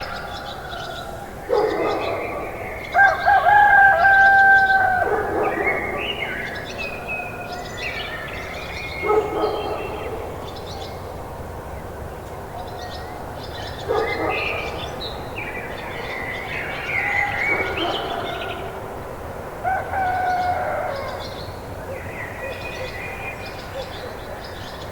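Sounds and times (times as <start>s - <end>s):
rooster crowing: 2.9s - 5.3s, 19.6s - 21.4s
small birds chirping: 4.6s - 18.8s.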